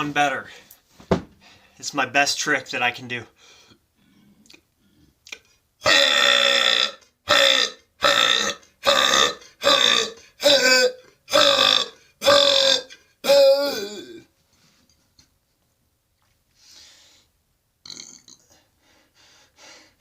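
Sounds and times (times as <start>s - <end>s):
man burping: 5.8s - 14.3s, 17.8s - 18.5s.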